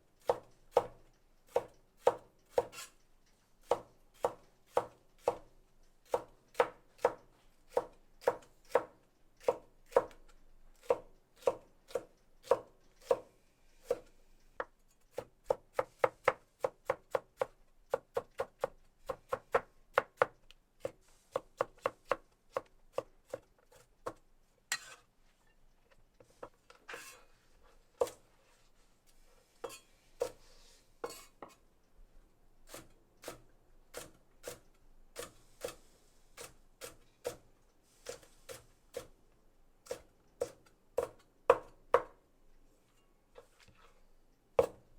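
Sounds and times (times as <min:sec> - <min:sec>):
knife chopping on cutting board: 0:29.6 - 0:30.4, 0:32.7 - 0:34.6, 0:35.2 - 0:35.8, 0:36.4 - 0:37.4, 0:39.8 - 0:42.1, 0:44.6 - 0:44.8.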